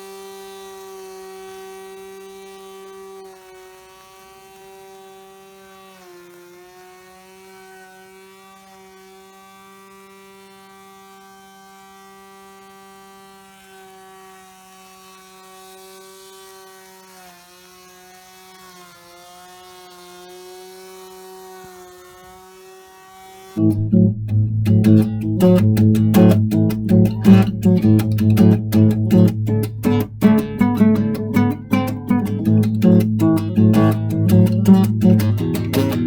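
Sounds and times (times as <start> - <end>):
electric motors whining: 0.0 - 23.6.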